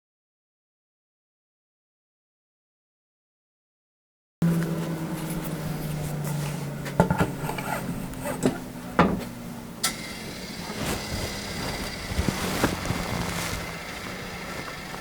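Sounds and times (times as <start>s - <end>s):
bandsaw humming: 4.4s - 15.0s
high whine with hiss: 9.8s - 15.0s.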